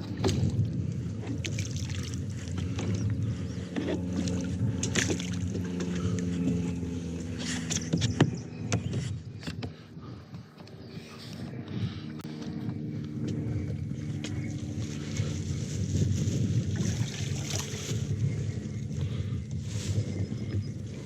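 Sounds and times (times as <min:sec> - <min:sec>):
paddle splashing water: 0:00.0 - 0:03.0, 0:03.7 - 0:06.2, 0:16.7 - 0:18.0.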